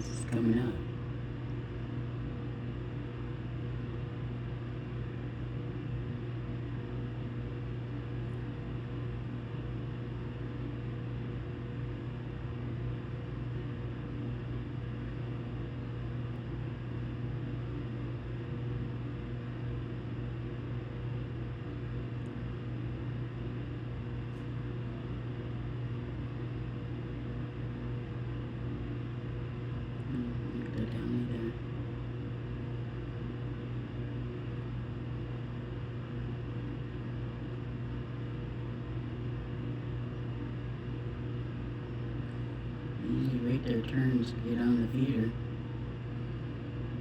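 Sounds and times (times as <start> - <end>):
machine humming: 0.0 - 0.9.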